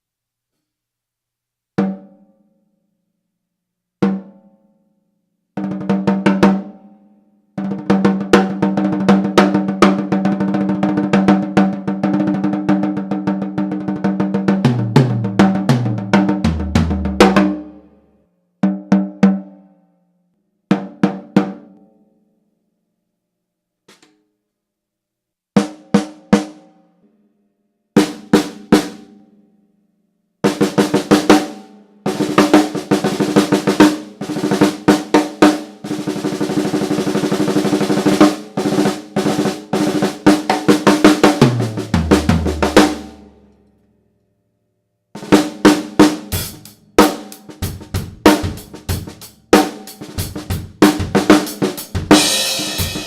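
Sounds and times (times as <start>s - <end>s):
tom fill: 12.1s - 17.9s, 32.1s - 43.4s, 45.2s - 53.0s
snare drum strokes and rolls: 12.2s - 17.6s, 30.5s - 31.5s, 32.1s - 43.2s, 45.2s - 53.0s.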